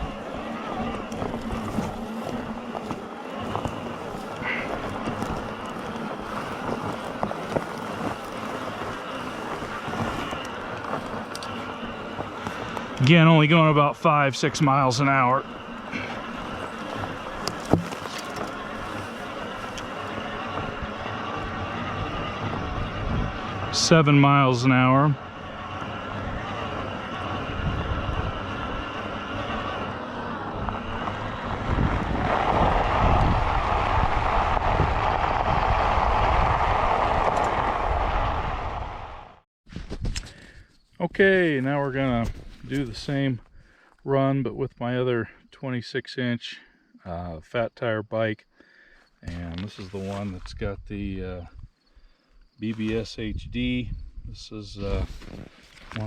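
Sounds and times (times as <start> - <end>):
electric bike motor whine: 0.0 - 39.4, 48.6 - 56.0
wind on microphone: 0.0 - 40.3, 52.9 - 56.0
tyre rumble: 0.0 - 40.4.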